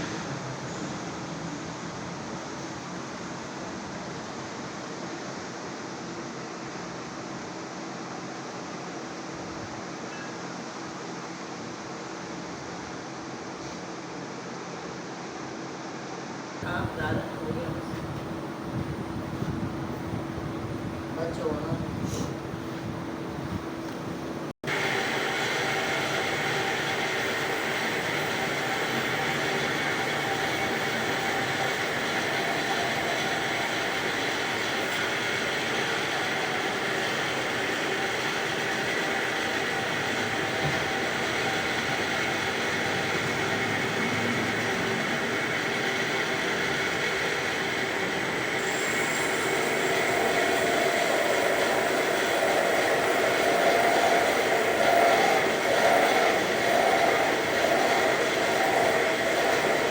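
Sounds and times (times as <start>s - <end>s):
machine humming: 16.6s - 59.9s.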